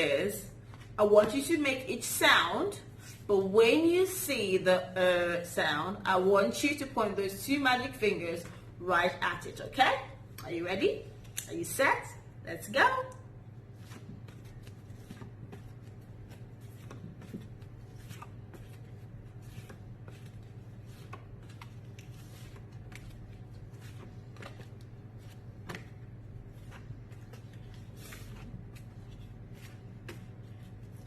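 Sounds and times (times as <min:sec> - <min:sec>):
steady low hum: 0:00.0 - 0:31.0
paper flashcards rustling: 0:13.7 - 0:31.0.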